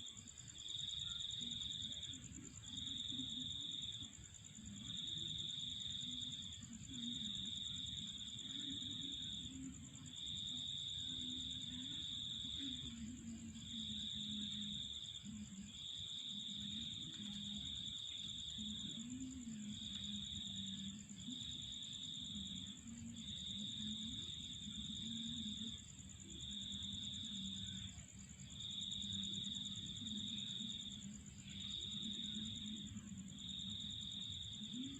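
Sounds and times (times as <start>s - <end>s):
continuous high insect trill: 0.0s - 34.9s.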